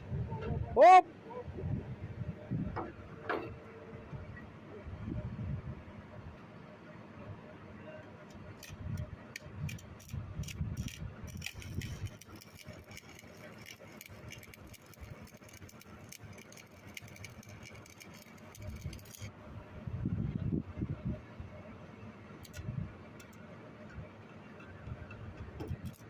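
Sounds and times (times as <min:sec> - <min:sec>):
metallic clinking and rattling: 0:09.7 - 0:19.3.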